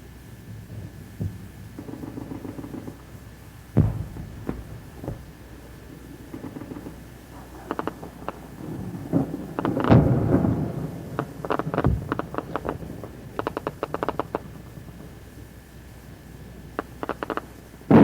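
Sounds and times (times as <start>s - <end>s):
distant gunfire: 1.2s - 8.6s.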